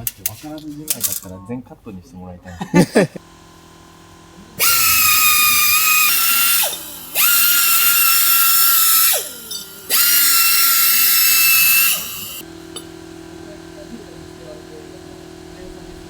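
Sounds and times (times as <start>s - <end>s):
high-speed power tool whining: 3.2s - 12.9s.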